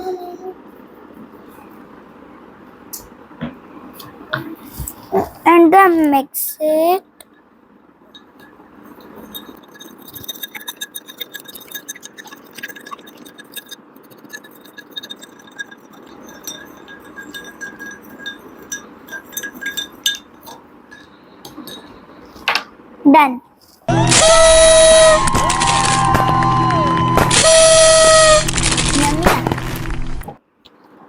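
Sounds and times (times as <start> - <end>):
spoon clinking against glass: 8.1 - 22.0.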